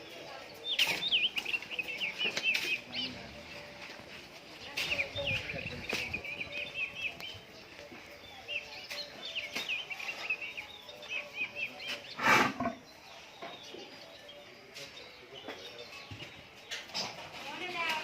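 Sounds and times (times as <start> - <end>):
small birds chirping: 0.0 - 18.0
animal snort: 12.1 - 12.8.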